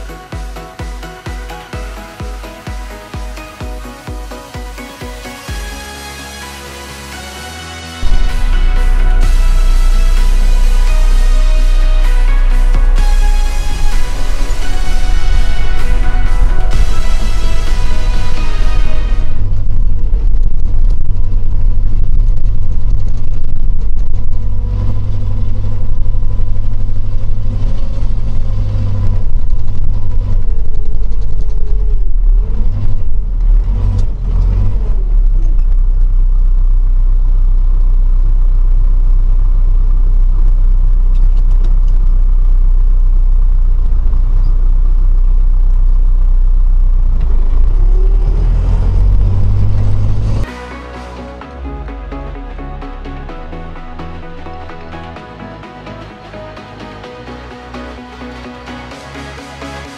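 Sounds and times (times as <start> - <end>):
vehicle engine humming: 0.0 - 59.9.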